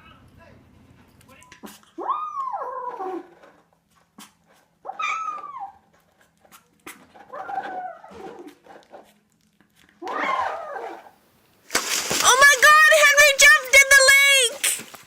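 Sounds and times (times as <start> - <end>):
pet animal whiny calls: 4.8 - 5.8.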